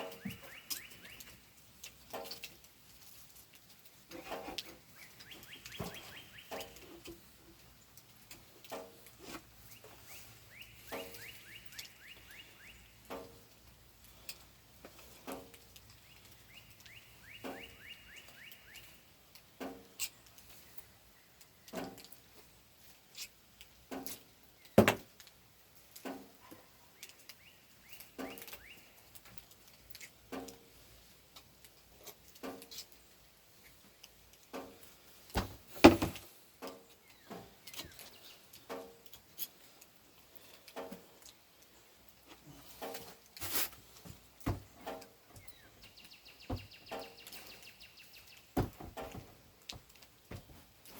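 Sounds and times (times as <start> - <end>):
songbird trill: 0.0 - 1.5, 4.7 - 8.0, 9.6 - 14.4, 15.4 - 19.2, 26.8 - 29.2, 36.7 - 39.5, 44.8 - 49.3.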